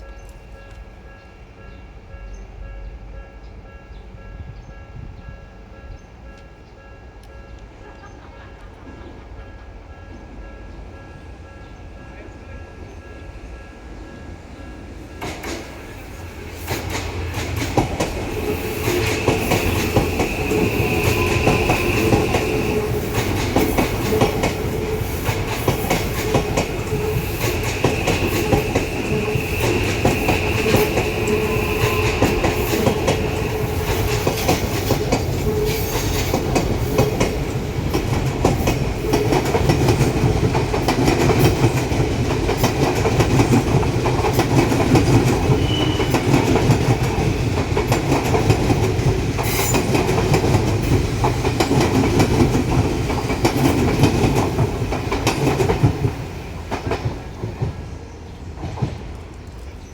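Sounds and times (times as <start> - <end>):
train wheels clacking over rail joints: 15.2 - 57.8
high wheel squeal: 26.9 - 34.1, 45.5 - 46.3.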